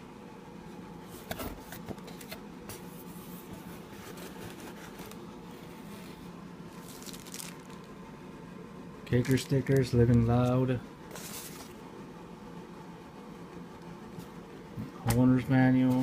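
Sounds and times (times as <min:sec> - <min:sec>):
steady low hum: 0:00.0 - 0:16.0
paper and cardboard rustling: 0:01.1 - 0:07.9, 0:09.2 - 0:11.8.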